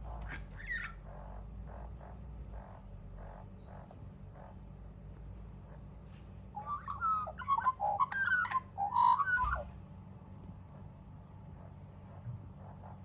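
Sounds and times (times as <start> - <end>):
magpie calling and warbling: 0.0 - 4.6, 6.6 - 9.7.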